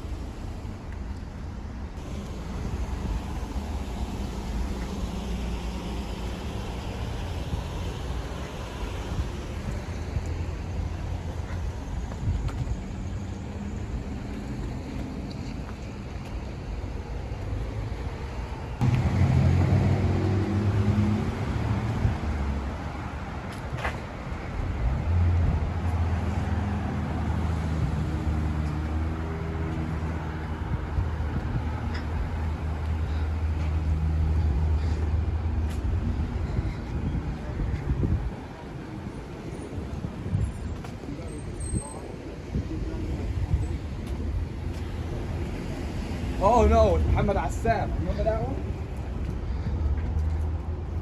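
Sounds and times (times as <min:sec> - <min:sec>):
engine running low hum: 0:00.0 - 0:51.0
vehicle road noise rumble: 0:00.0 - 0:51.0
higher engine note: 0:02.0 - 0:12.1, 0:18.8 - 0:22.9
wind on microphone: 0:24.0 - 0:46.4.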